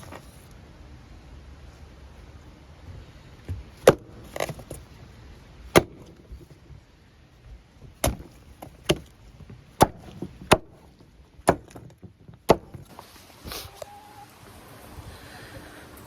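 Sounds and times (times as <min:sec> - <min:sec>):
sharp knocks: 0:07.8 - 0:12.9.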